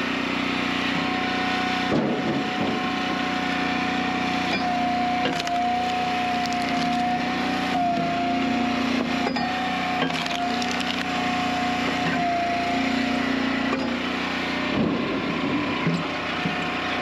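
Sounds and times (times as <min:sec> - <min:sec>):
wood splitter whining: 0:00.0 - 0:17.0
logs cracking and splitting: 0:05.0 - 0:07.2, 0:10.0 - 0:11.4.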